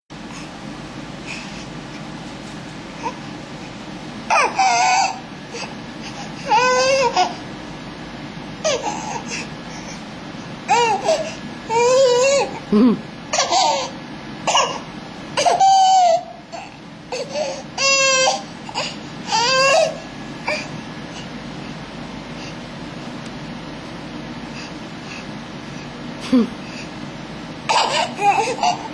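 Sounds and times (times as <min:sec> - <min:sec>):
high-pitched cough-like cries: 0:10.7 - 0:20.8, 0:27.7 - 0:28.9.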